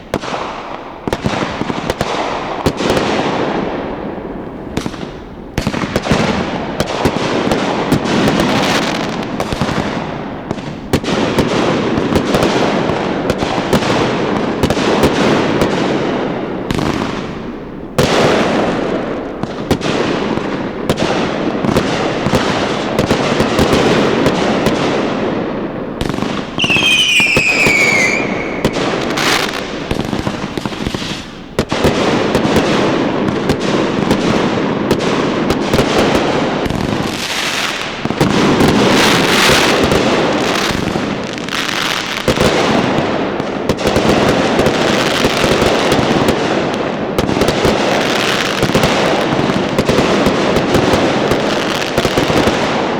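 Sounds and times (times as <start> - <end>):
fireworks bursting and crackling: 0.0 - 52.9
sharp firework bang: 26.0 - 32.7
falling firework whistle: 26.5 - 29.9.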